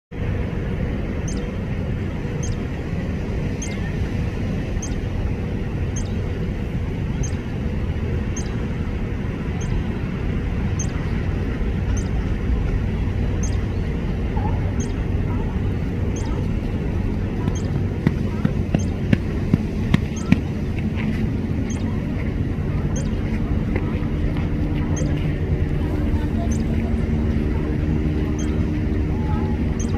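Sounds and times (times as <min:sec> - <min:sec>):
low outdoor rumble: 0:00.1 - 0:29.9
songbird high chirp: 0:01.2 - 0:01.6, 0:02.4 - 0:02.6, 0:03.5 - 0:04.0, 0:04.8 - 0:05.1, 0:05.9 - 0:06.2, 0:07.1 - 0:07.4, 0:08.3 - 0:08.7, 0:09.6 - 0:09.8, 0:10.7 - 0:11.2, 0:11.9 - 0:12.2, 0:13.4 - 0:15.4, 0:16.1 - 0:16.5, 0:17.5 - 0:17.8, 0:18.7 - 0:19.1, 0:20.1 - 0:20.4, 0:21.6 - 0:22.0, 0:22.9 - 0:23.2, 0:24.9 - 0:25.2, 0:26.4 - 0:26.8, 0:28.3 - 0:28.6.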